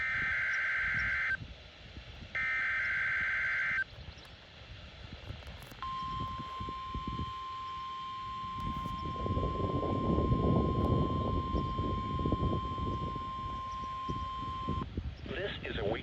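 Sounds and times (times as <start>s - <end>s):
buzzy warbling data squeal: 0.0s - 1.4s, 2.4s - 3.9s, 5.9s - 14.8s
steady warning alarm tone: 0.0s - 1.4s, 2.4s - 3.9s, 5.8s - 14.9s.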